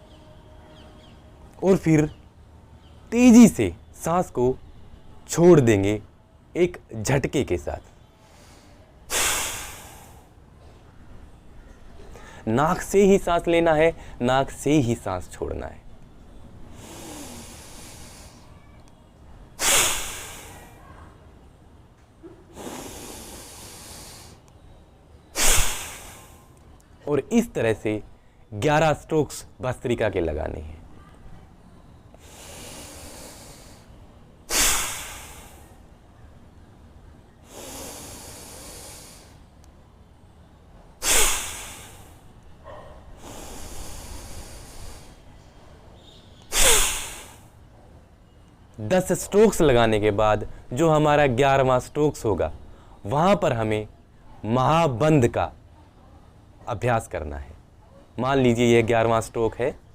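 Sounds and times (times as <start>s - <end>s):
forceful nasal exhale: 8.3s - 10.3s, 16.7s - 18.5s, 19.6s - 20.8s, 22.5s - 24.4s, 25.4s - 26.5s, 32.2s - 33.9s, 34.5s - 35.8s, 37.4s - 39.4s, 41.0s - 42.3s, 43.2s - 45.3s, 46.4s - 47.5s
long inhale through nose: 16.7s - 18.6s, 19.6s - 20.8s, 22.6s - 24.4s, 25.4s - 26.5s, 32.2s - 33.9s, 34.5s - 35.8s, 37.4s - 39.4s, 41.0s - 42.3s, 43.2s - 45.3s, 46.5s - 47.5s.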